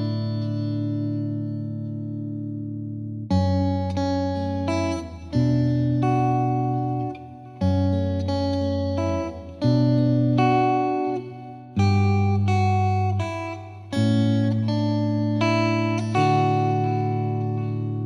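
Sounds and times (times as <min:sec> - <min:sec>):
guitar plucked notes and chords: 0:00.0 - 0:18.0.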